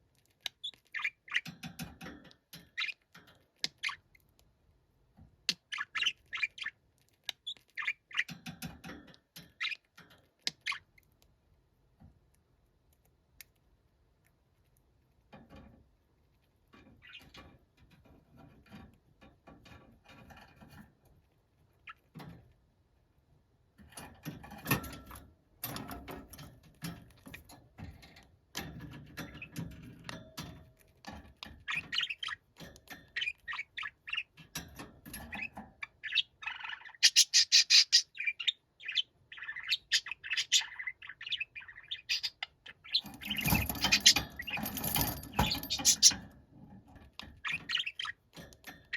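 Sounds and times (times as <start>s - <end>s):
budgerigar chattering and chirping: 35.4s - 44.3s, 45.4s - 46.2s.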